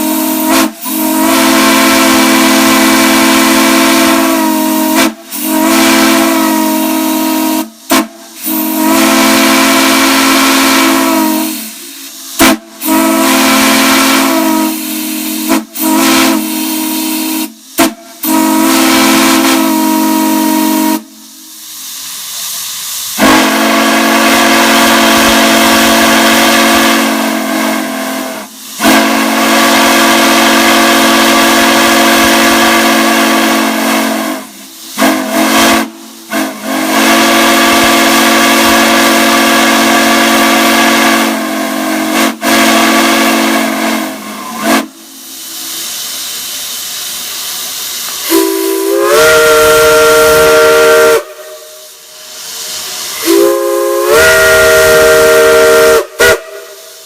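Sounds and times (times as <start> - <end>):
steam whistle chord blasts: 0.0 - 22.5, 23.1 - 57.0
steam hissing: 0.0 - 57.0
short whistle toots: 47.4 - 57.0.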